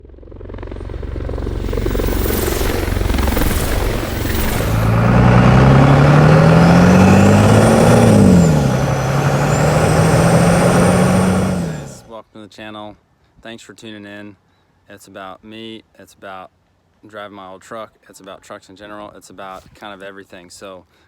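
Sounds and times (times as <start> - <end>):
truck engine accelerating: 0.0 - 12.1.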